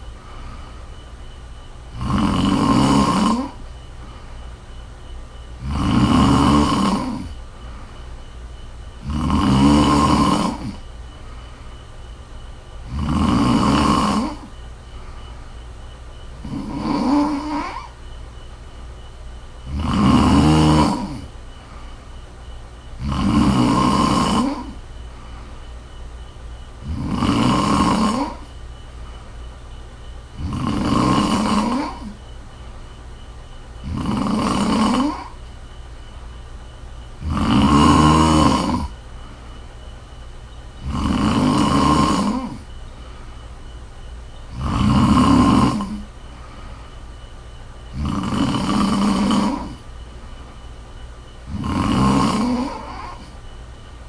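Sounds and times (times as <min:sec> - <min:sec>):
woman snoring: 0:01.9 - 0:03.7, 0:05.6 - 0:07.5, 0:09.0 - 0:10.9, 0:12.8 - 0:14.6, 0:16.4 - 0:18.0, 0:19.6 - 0:21.4, 0:23.0 - 0:24.9, 0:26.8 - 0:28.6, 0:30.3 - 0:32.3, 0:33.8 - 0:35.5, 0:37.2 - 0:39.1, 0:40.8 - 0:42.8, 0:44.4 - 0:46.3, 0:47.9 - 0:49.9, 0:51.4 - 0:53.4.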